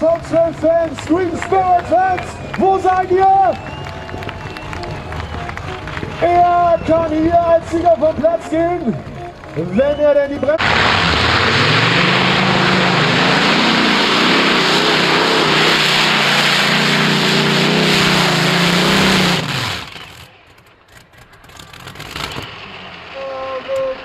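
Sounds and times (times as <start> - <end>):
pulling tractor engines at full throttle: 0.0 - 24.0.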